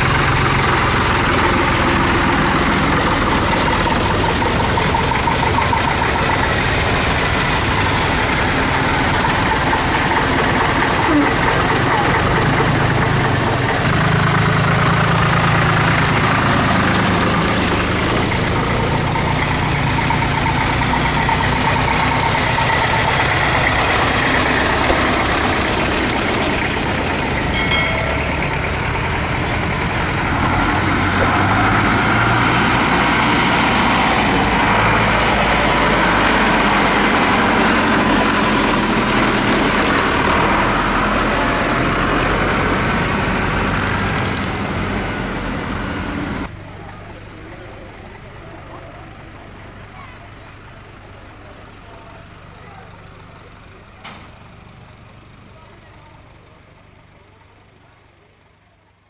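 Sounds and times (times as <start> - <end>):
tractor engines running: 0.0 - 59.0
brief high tone: 27.4 - 28.8.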